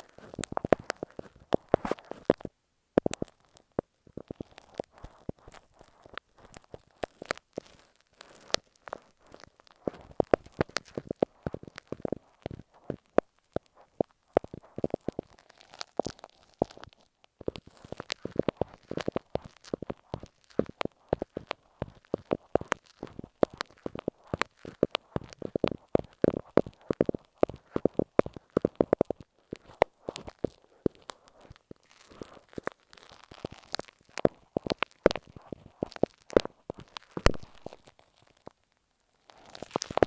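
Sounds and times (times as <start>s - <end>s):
sticky crackles and taps: 0.0s - 38.6s, 39.2s - 40.0s.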